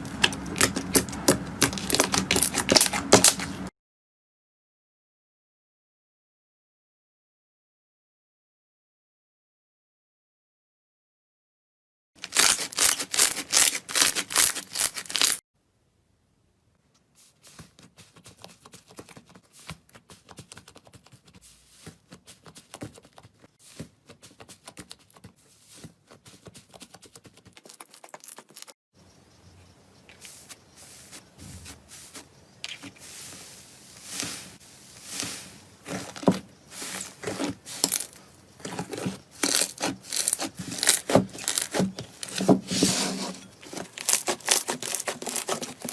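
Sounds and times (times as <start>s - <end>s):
slime crackling and popping: 0.1s - 3.6s, 39.4s - 41.8s, 43.9s - 45.9s.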